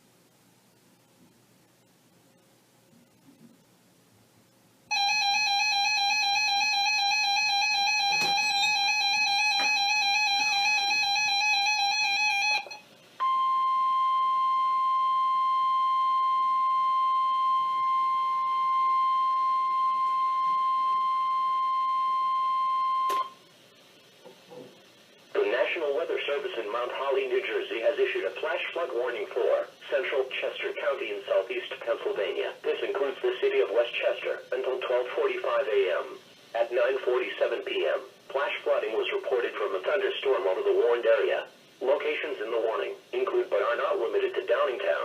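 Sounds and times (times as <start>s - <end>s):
warbling electronic alert tone: 4.9s - 23.3s
steady high beep: 7.8s - 23.4s.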